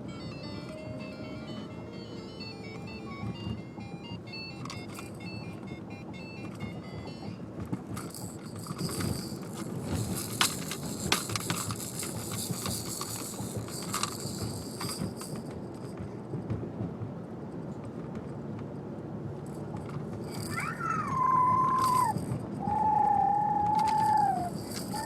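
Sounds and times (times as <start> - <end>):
high jingling: 0.0 - 7.4, 8.0 - 16.0, 20.2 - 25.0
toy electronic tune: 0.0 - 7.4
road rumble inside car: 0.0 - 25.0
scattered clicks: 23.6 - 25.0.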